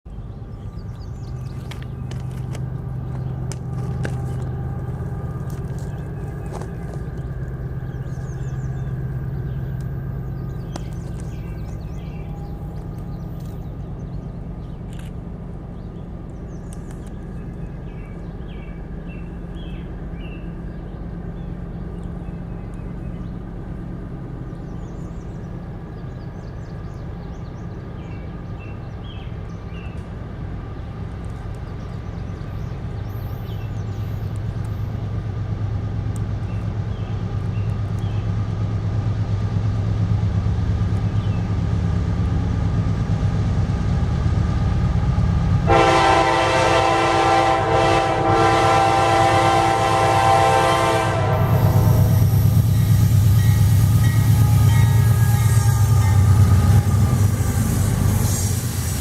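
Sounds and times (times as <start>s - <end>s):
diesel locomotive engine rumbling: 0.0s - 59.0s.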